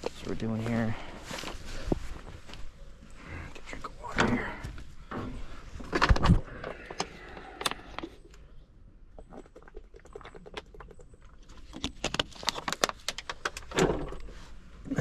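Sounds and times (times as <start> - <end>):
water bottle clicks and crackles: 9.2 - 14.3.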